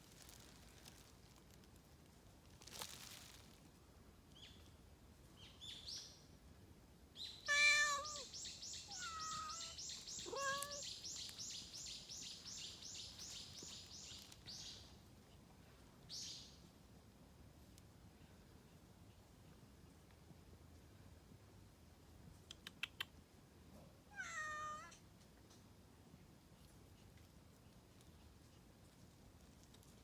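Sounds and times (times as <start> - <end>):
cat meowing: 7.5 - 8.3, 8.9 - 10.9, 24.1 - 25.0.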